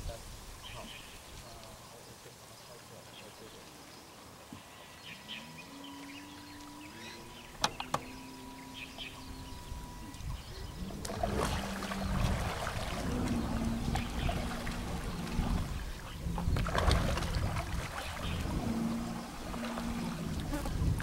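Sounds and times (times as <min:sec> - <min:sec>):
rushing water and wind: 0:00.0 - 0:21.0
model boat motor whine: 0:04.7 - 0:21.0.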